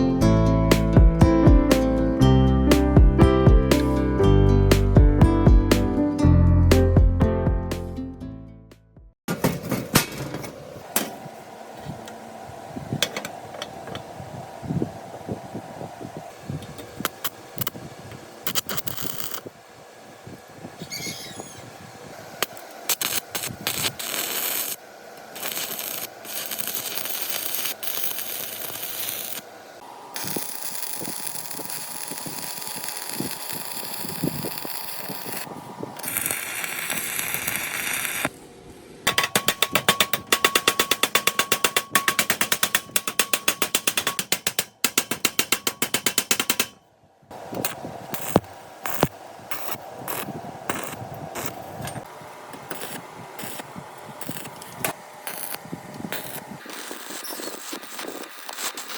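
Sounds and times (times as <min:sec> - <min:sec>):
tools working on metal: 0:18.4 - 0:19.5, 0:22.4 - 0:29.5, 0:30.2 - 0:38.3, 0:39.1 - 0:46.8, 0:47.6 - 0:58.9.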